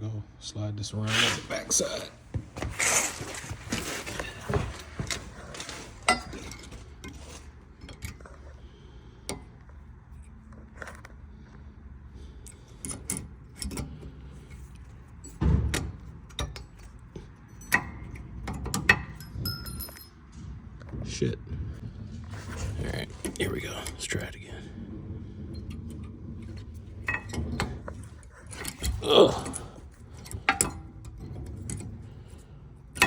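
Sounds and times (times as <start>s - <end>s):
metallic clinks and scrapes of brake pad: 2.6s - 11.1s.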